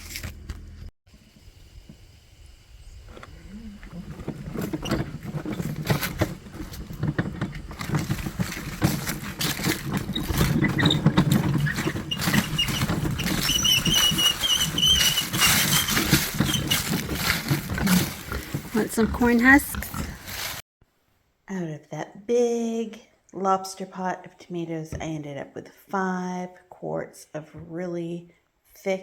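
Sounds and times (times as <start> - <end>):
pigs grunting: 3.3 - 7.0, 9.9 - 20.5.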